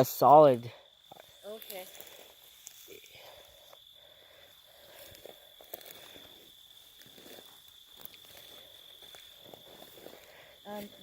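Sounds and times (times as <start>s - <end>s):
night insects trilling: 0.0s - 11.0s
footsteps crunching through dry brush: 1.1s - 3.1s, 4.7s - 11.0s.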